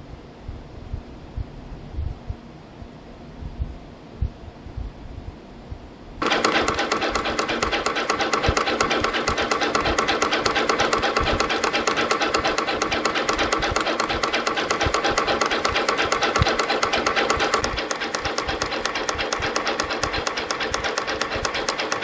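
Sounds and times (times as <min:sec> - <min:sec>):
spring-coiling machine clatter: 0:06.2 - 0:22.0.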